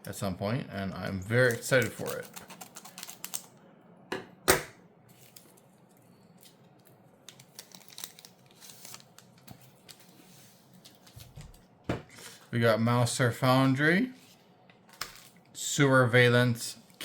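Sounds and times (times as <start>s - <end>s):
foil pack tearing: 1.4s - 3.5s, 7.3s - 9.2s
paper and card rustling: 1.4s - 3.5s, 7.3s - 11.6s.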